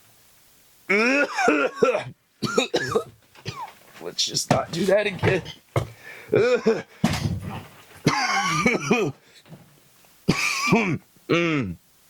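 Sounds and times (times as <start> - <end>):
man gagging and coughing: 0.9 - 3.7, 6.3 - 9.2, 10.3 - 11.8.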